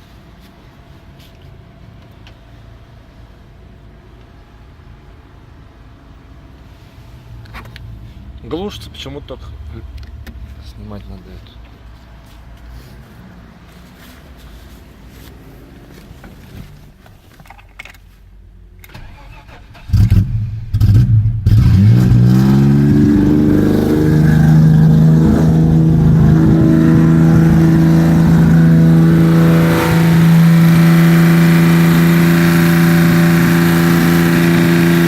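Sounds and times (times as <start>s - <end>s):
car engine high idle: 23.6s - 35.0s.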